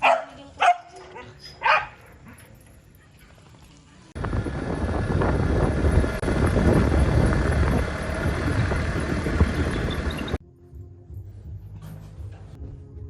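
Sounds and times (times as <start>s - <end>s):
loud low rumbling: 4.2s - 10.4s
wind on microphone: 4.2s - 10.4s.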